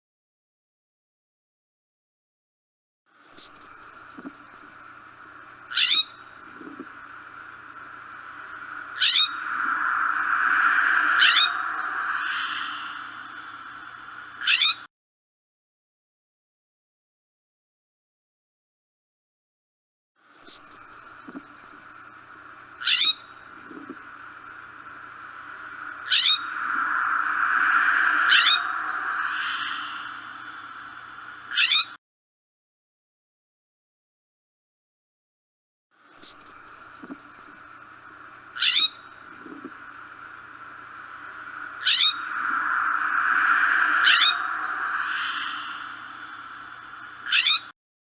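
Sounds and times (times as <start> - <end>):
background hiss: 3.5 - 14.4, 20.5 - 31.5, 36.3 - 47.3
jay harsh raspy calls: 9.0 - 9.6
jay rasping calls: 9.0 - 9.7, 26.0 - 26.8, 41.8 - 42.8.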